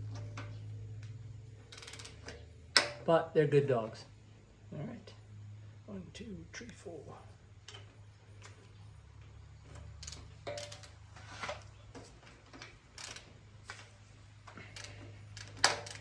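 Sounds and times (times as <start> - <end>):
steady low hum: 0.0 - 16.0
torque wrench clicks: 0.4 - 3.0, 12.9 - 13.3, 14.7 - 16.0.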